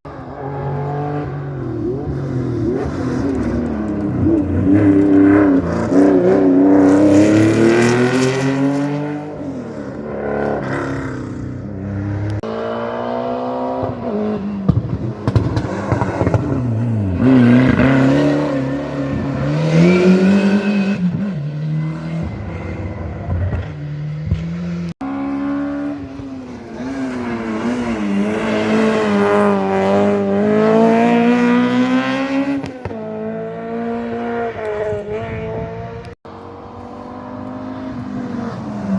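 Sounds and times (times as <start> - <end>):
rally car engines at full throttle: 0.0 - 38.9
car engine revving high: 11.8 - 38.9.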